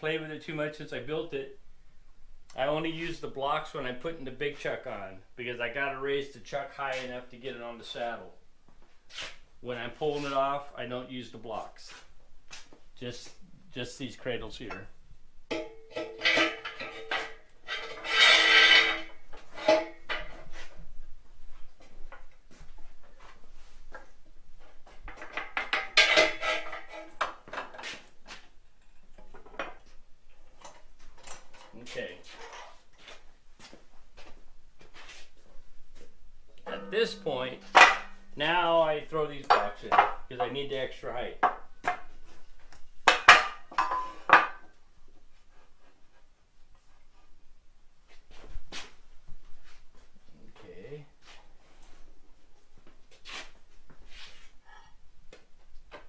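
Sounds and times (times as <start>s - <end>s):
heavy steel parts clanking: 15.5s - 20.4s, 25.1s - 27.7s, 36.6s - 42.0s, 43.0s - 44.7s.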